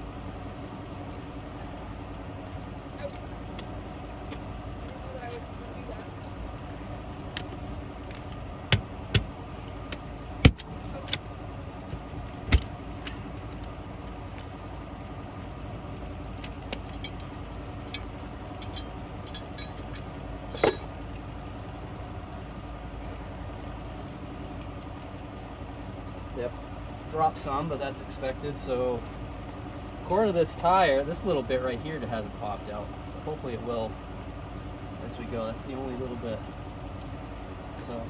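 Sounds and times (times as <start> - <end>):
inflator pump humming: 0.0 - 38.0
hooks and shackles clinking: 16.3 - 21.3
metal clanks: 16.4 - 21.3.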